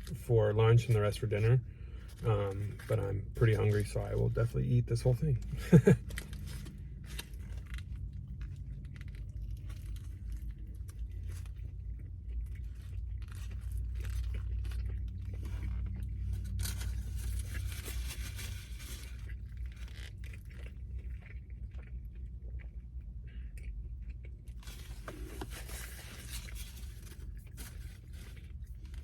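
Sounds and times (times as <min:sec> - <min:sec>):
chewing and crunching sandwich: 0:00.0 - 0:29.0
steady low hum: 0:00.0 - 0:29.0
wrapper rustling: 0:16.3 - 0:20.4, 0:24.6 - 0:29.0.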